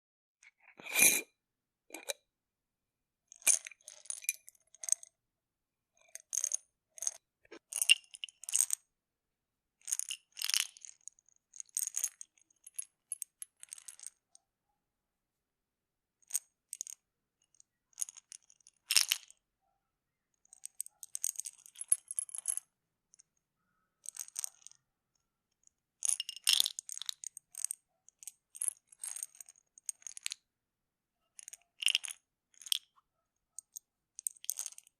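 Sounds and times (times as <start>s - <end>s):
pills rattling in bottle: 3.3s - 5.1s, 24.0s - 24.8s, 26.0s - 30.4s, 31.4s - 32.9s, 33.6s - 34.9s.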